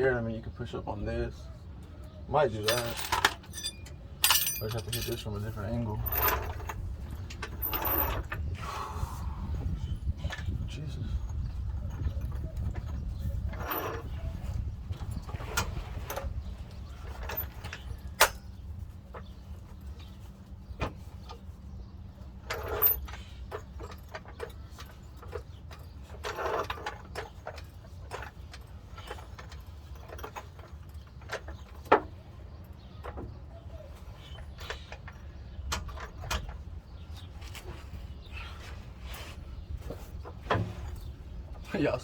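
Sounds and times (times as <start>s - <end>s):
hand tools clinking on metal: 2.5s - 8.2s, 22.4s - 32.0s.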